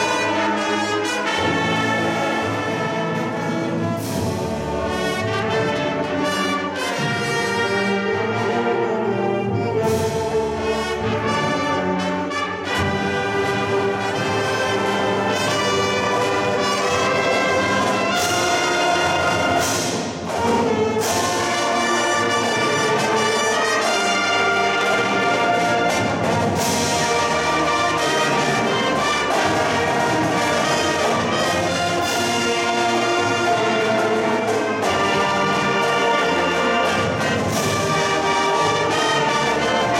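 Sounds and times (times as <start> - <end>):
brass chords: 0.0 - 39.9
marching band playing: 0.0 - 39.9
percussion hits: 12.6 - 39.9.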